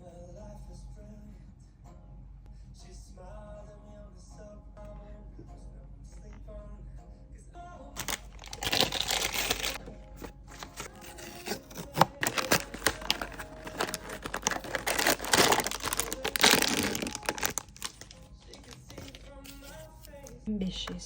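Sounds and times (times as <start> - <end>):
packaging crinkling and tearing: 8.0 - 20.2.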